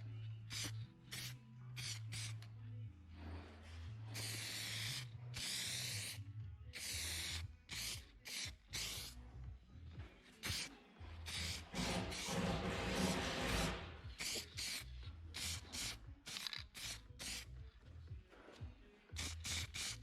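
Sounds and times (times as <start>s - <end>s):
scraping on metal: 11.4s - 14.4s.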